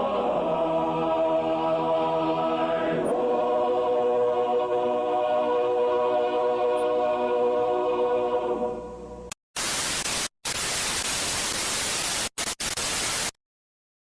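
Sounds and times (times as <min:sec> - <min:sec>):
television static hiss: 0:09.6 - 0:13.4.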